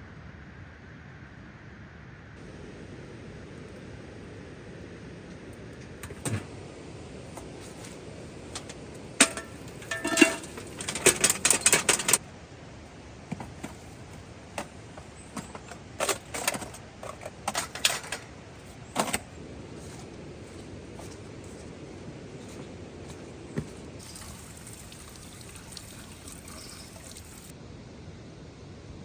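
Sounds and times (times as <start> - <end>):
metal objects clinking: 8.6 - 12.2, 15.3 - 21.6.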